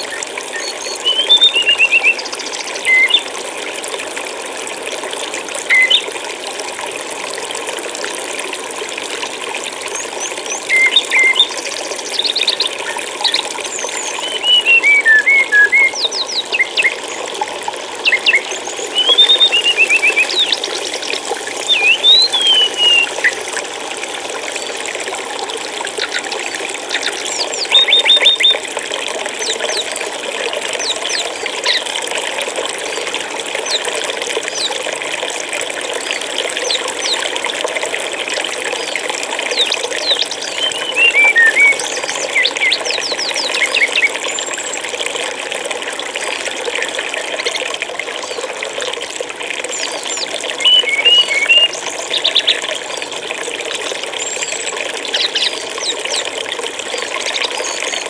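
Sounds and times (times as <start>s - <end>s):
small birds chirping: 0.0s - 3.3s, 5.7s - 6.1s, 9.9s - 17.2s, 18.0s - 23.4s, 25.9s - 28.6s, 30.8s - 31.9s, 36.1s - 37.3s, 38.7s - 44.7s, 49.7s - 52.7s, 53.9s - 56.3s
stream water flowing: 0.0s - 58.0s.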